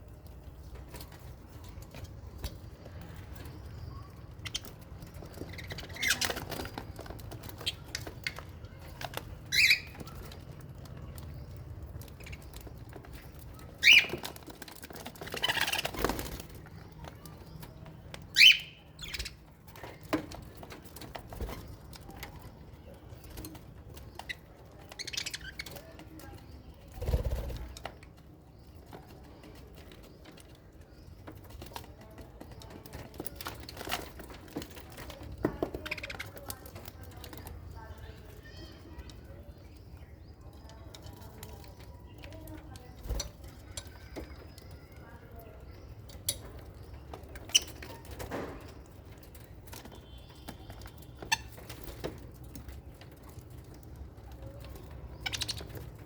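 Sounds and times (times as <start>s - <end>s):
small clicks and rustles: 0.0s - 18.4s, 19.0s - 56.0s
bird calls: 9.4s - 20.1s, 35.2s - 52.1s, 54.4s - 56.0s
wings flapping: 13.9s - 16.6s, 27.0s - 27.8s.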